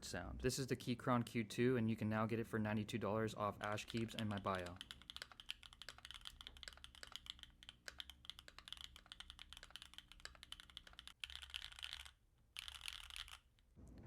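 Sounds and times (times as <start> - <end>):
mechanical keyboard typing: 3.6 - 13.5.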